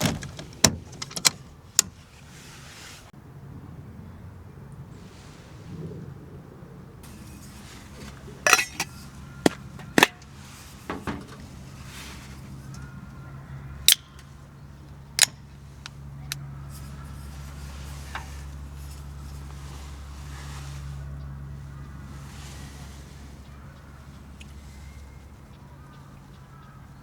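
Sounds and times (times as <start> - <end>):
hard objects clicking and knocking: 8.5 - 10.3, 10.9 - 11.4.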